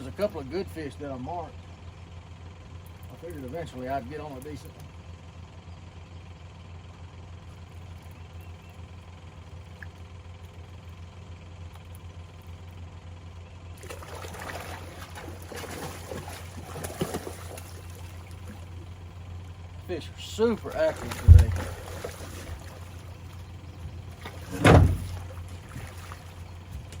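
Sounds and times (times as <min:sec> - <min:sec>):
low motor hum: 0:00.0 - 0:27.0
water splashing and dripping: 0:13.8 - 0:18.9, 0:20.4 - 0:27.0.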